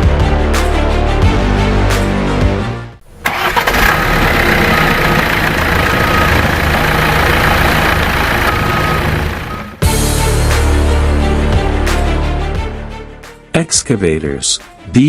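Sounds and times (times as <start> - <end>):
excavator diesel engine: 3.0 - 10.6.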